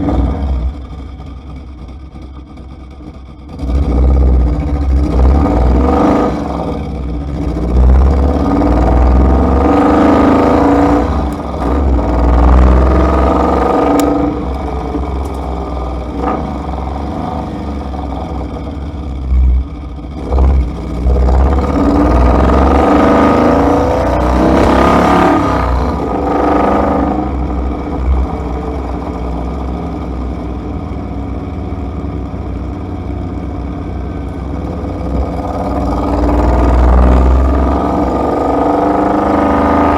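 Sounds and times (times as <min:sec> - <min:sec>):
low engine rumble: 0:00.0 - 0:38.5
car engine accelerating: 0:00.0 - 0:39.9.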